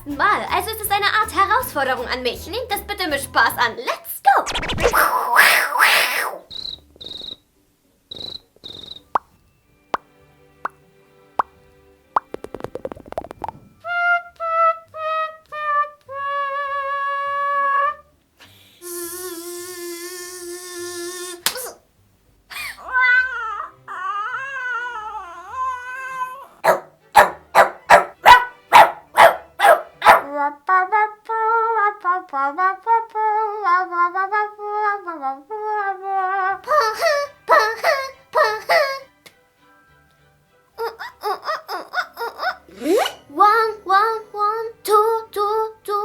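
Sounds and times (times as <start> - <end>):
woman's shrill falling cries: 5.0 - 6.5
hummed tone with breathy hiss: 18.4 - 21.4.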